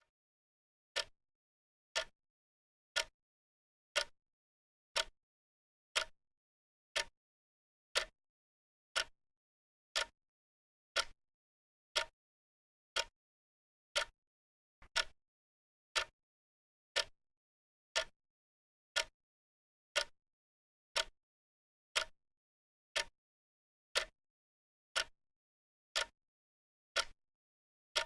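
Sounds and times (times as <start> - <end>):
clock ticking: 11.0 - 11.2, 14.9 - 15.2, 26.0 - 26.2, 27.0 - 27.2.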